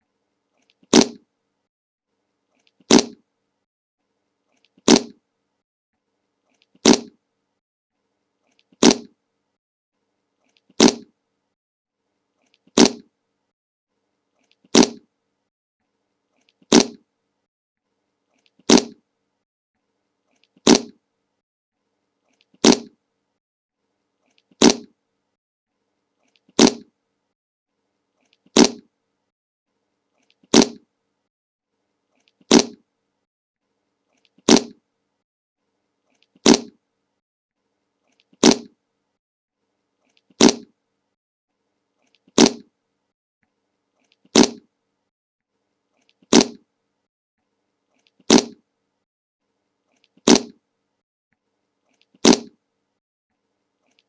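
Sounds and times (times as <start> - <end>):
short sharp fart sound: 0.9 - 1.2, 2.9 - 3.2, 4.8 - 5.2, 6.8 - 7.2, 8.8 - 9.1, 10.8 - 11.1, 12.8 - 13.1, 14.7 - 15.0, 16.7 - 17.0, 18.7 - 19.0, 20.6 - 21.0, 22.6 - 23.0, 24.6 - 24.9, 26.6 - 26.9, 28.6 - 28.9, 30.5 - 30.8, 32.5 - 32.8, 34.5 - 34.8, 36.4 - 36.8, 38.4 - 38.7, 40.4 - 40.7, 42.4 - 42.7, 44.3 - 44.6, 46.3 - 46.6, 48.3 - 48.6, 50.2 - 50.6, 52.2 - 52.6.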